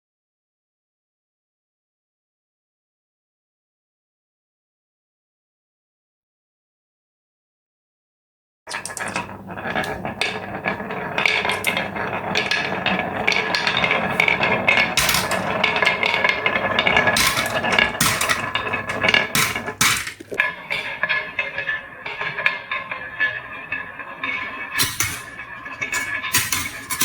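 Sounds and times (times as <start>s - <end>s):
marbles clattering down a track: 8.7s - 27.0s.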